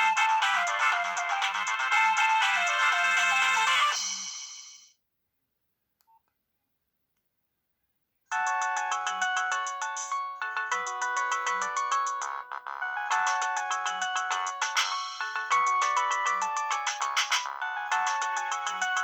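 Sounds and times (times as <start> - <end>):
phone ringtone melody: 0.0 - 4.4, 8.3 - 19.0
polyphonic ringtone: 0.0 - 4.7, 8.3 - 19.0.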